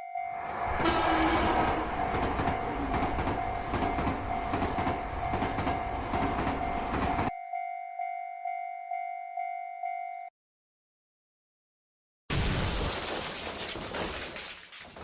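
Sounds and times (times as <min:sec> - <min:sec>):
crossing bell dinging: 0:00.0 - 0:10.3
train wheels clattering over rails: 0:00.8 - 0:07.3.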